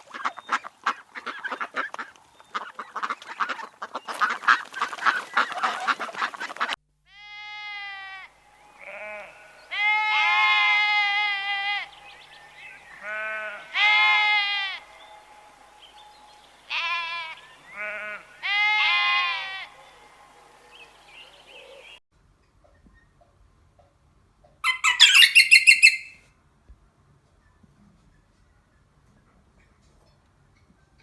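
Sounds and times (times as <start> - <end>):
livestock bleating: 7.1 - 11.9, 13.0 - 14.9, 16.7 - 19.7
high-pitched pulsed animal calls: 24.6 - 26.2.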